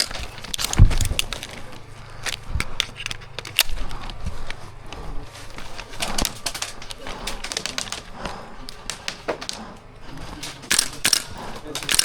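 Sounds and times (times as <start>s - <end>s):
pellet hits: 0.0s - 12.0s
airsoft gun shots: 10.6s - 12.0s.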